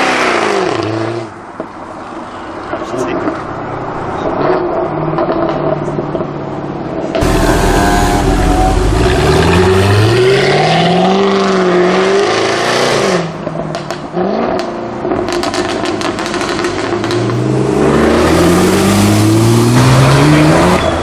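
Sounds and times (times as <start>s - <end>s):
car engine revving: 7.2s - 12.7s, 17.4s - 20.8s.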